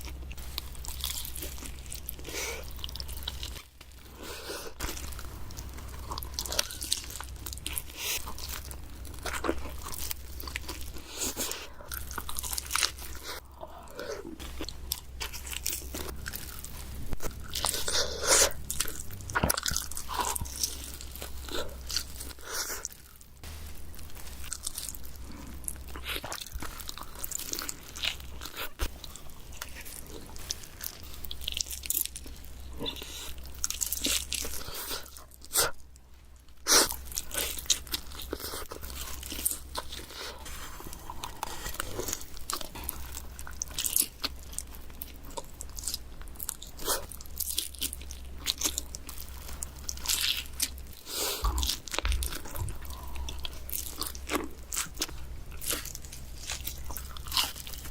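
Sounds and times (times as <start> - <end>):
crust crackling: 0.0 - 57.9
person chewing pizza: 0.0 - 57.9.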